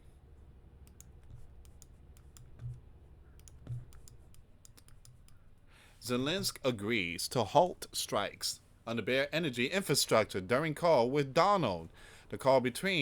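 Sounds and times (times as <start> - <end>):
mouse and keyboard clicks: 0.9 - 2.8, 3.4 - 5.4
soft low thumps: 2.4 - 3.0, 3.6 - 4.0.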